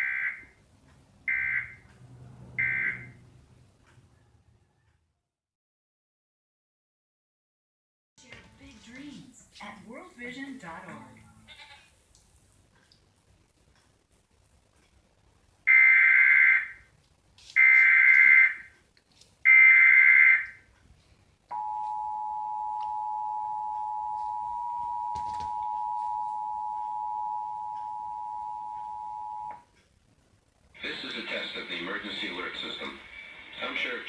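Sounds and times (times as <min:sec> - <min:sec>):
two-tone attention signal: 0:21.6 - 0:29.6.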